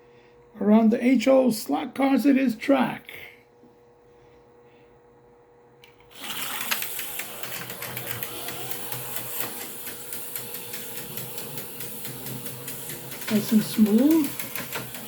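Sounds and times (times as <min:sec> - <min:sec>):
slot car motor whir with ticking: 0:05.8 - 0:15.0.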